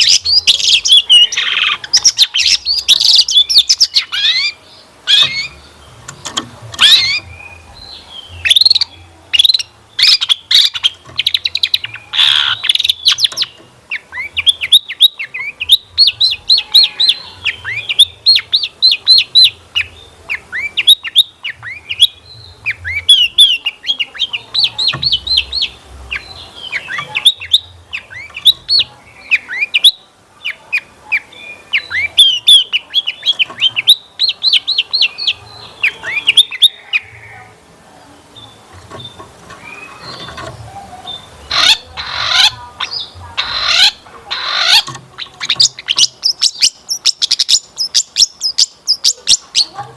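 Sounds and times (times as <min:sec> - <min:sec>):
bird singing chirps and whistles: 0:31.2 - 0:37.3, 0:38.5 - 0:44.0.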